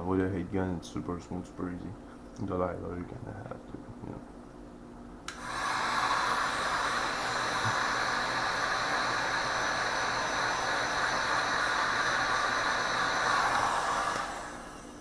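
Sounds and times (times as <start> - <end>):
heat gun fan hiss: 5.3 - 15.0.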